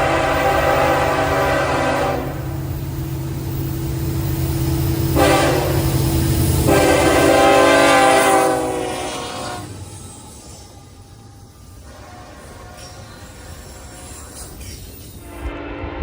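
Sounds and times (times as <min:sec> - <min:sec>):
locomotive air horn blasts: 0:00.0 - 0:02.6, 0:05.1 - 0:09.8, 0:11.8 - 0:13.1, 0:15.2 - 0:16.0
passing train rumble: 0:00.0 - 0:16.0.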